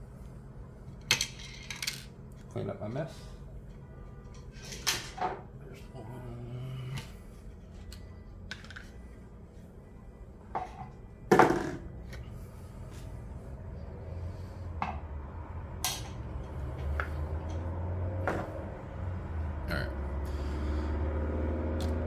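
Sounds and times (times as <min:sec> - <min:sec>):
small parts and tools clattering: 0:01.0 - 0:02.1.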